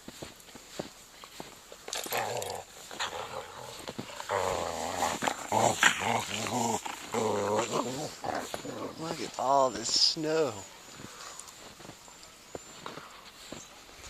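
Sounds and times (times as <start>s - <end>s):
dogs growling: 1.9s - 9.6s.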